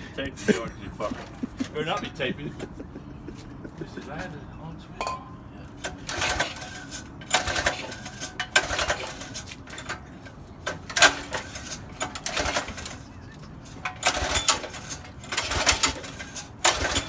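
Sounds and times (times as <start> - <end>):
recoil pull starter whirring: 5.0 - 17.0.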